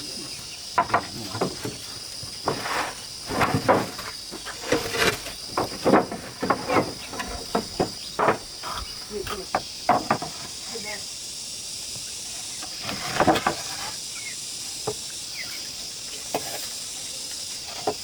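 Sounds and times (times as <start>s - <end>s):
insects droning: 0.0s - 18.0s
irregular knocks and clatters: 0.7s - 10.6s.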